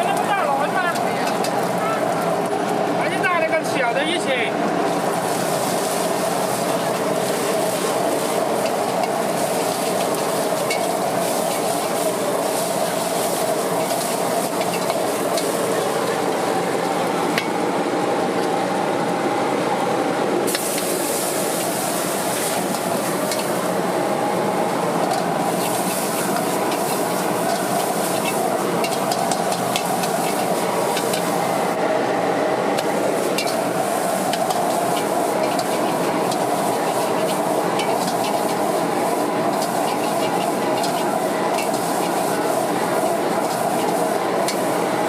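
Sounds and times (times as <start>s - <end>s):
food sizzling in a wok: 0.0s - 2.5s, 4.6s - 17.6s, 20.4s - 31.8s, 32.8s - 45.0s
metal spatula scraping wok: 5.3s - 15.6s, 20.6s - 23.8s, 25.1s - 31.4s, 33.2s - 44.8s.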